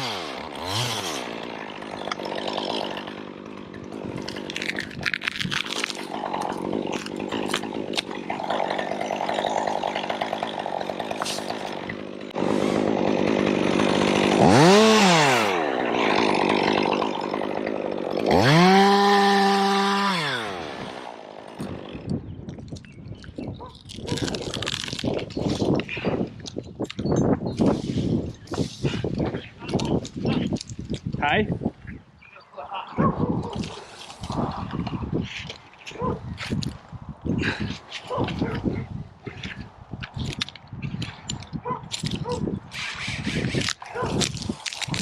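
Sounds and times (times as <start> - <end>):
chainsaw revving: 0.0 - 22.2.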